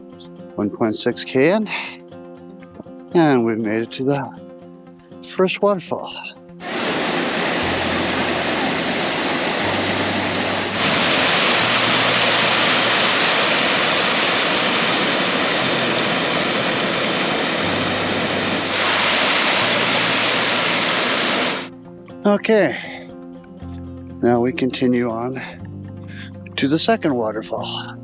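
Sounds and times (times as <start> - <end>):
waterfall rushing: 6.6 - 21.7.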